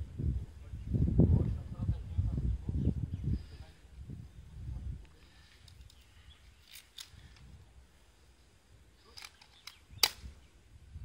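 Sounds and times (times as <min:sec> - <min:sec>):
faint background noise: 0:00.0 - 0:11.0
short sharp clicks: 0:09.1 - 0:10.3.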